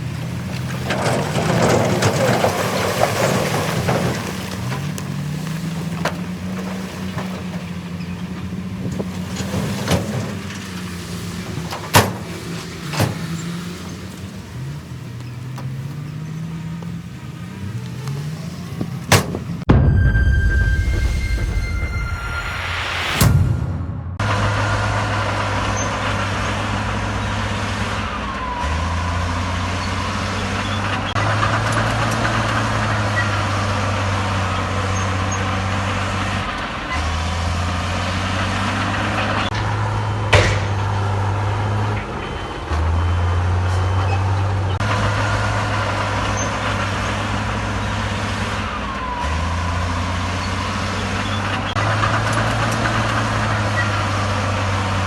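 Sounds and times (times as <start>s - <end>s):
heavy diesel machinery running: 0.0s - 55.0s
sharp knock: 19.1s - 24.2s.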